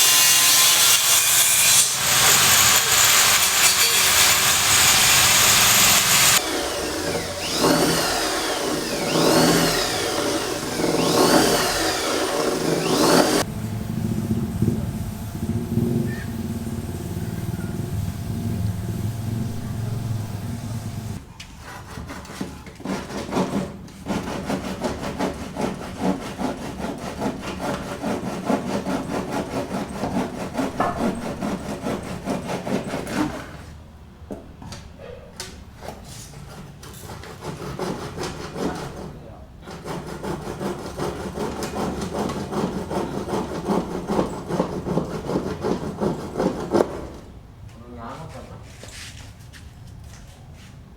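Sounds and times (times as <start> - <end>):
rhythmic rasping of sawing: 0.0 - 13.5, 20.0 - 33.8, 36.0 - 47.3
power tool rising and falling pitch: 1.8 - 21.2.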